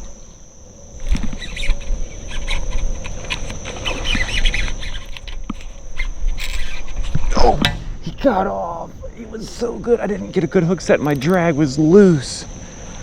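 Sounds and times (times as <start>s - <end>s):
high insect buzz: 0.0s - 13.0s
fishing reel clicking: 1.0s - 7.2s, 11.0s - 11.5s.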